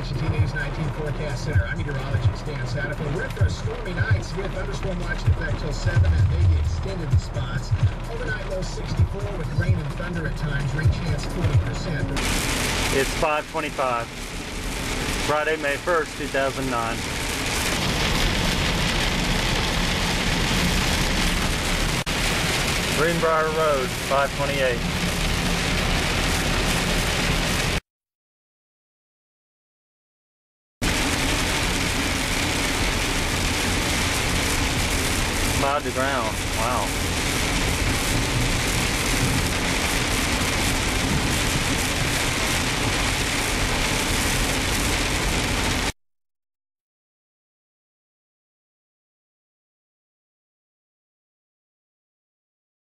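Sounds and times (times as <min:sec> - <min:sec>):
heavy rain hissing: 0:12.2 - 0:27.8, 0:30.8 - 0:45.9.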